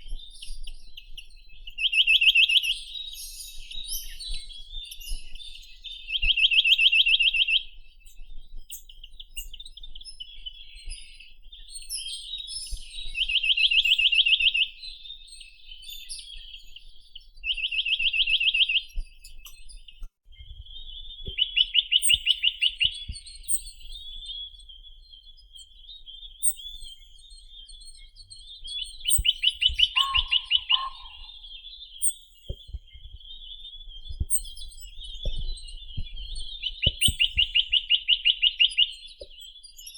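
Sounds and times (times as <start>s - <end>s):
soft bird twittering: 0.0s - 39.9s
bird trilling: 29.1s - 31.6s.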